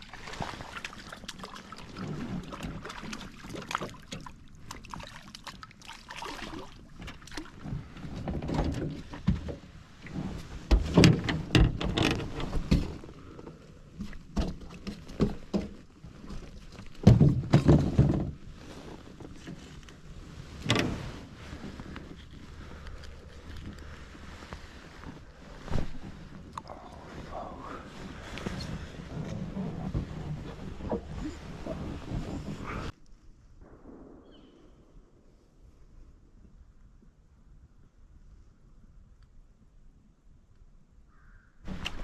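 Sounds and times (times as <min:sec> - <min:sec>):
knocks and clicks in boat: 0:07.0 - 0:18.5, 0:20.5 - 0:22.0, 0:28.2 - 0:32.9.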